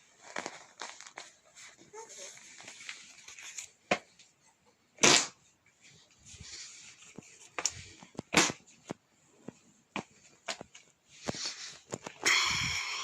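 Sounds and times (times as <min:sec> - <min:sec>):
light clicks and rustles: 0:05.7 - 0:12.2.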